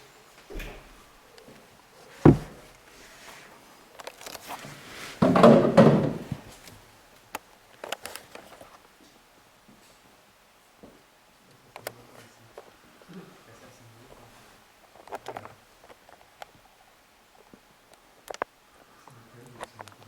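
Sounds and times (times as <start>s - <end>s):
scuffing and rustling: 0.4s - 5.4s
sharp thunk: 2.2s - 2.6s.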